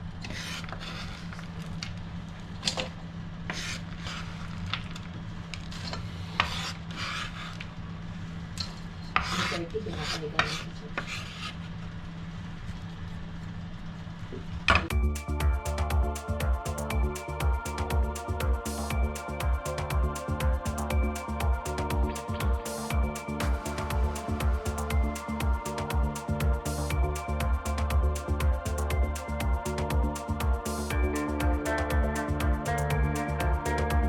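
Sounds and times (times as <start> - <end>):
music: 14.9 - 34.0
steady low hum: 14.9 - 34.0.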